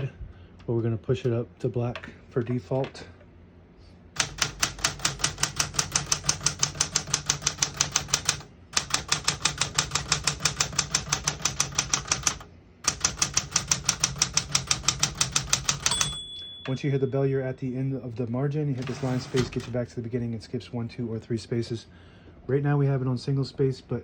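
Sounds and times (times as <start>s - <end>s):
typewriter keys striking: 4.2s - 16.3s.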